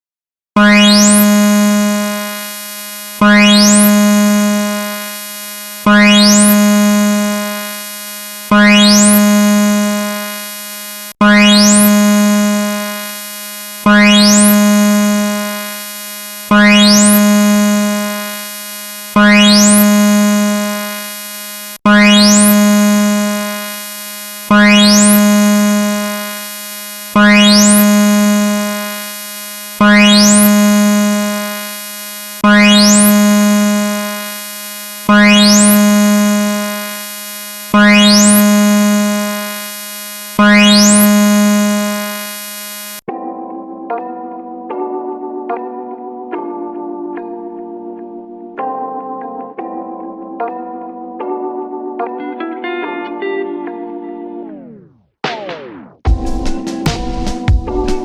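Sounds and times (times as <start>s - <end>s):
synthesized alarm tone: 0.6s - 43.0s.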